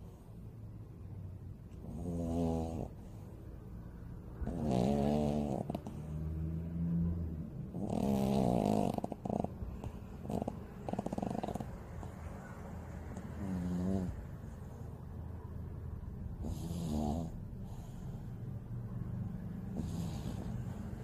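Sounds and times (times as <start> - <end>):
dog snoring: 1.7 - 3.3, 4.3 - 6.9, 7.7 - 12.1, 13.1 - 14.9, 16.4 - 18.4, 19.6 - 21.0.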